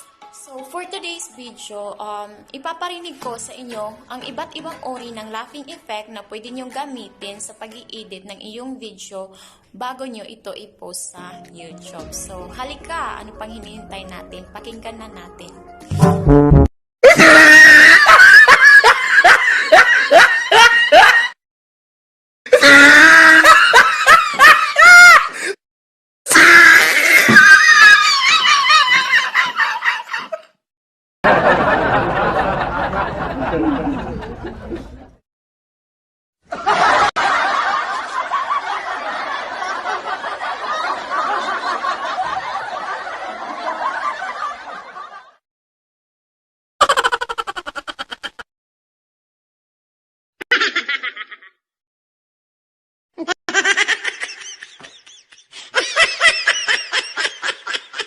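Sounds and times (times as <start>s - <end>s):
laugh ending in shrill squeal: 17.0s - 18.6s, 22.5s - 23.8s, 24.4s - 25.3s, 26.3s - 29.4s
high-pitched pulsing laugh: 46.8s - 48.5s, 50.4s - 51.6s
person laughing: 46.8s - 48.5s, 50.4s - 51.6s, 53.2s - 58.0s.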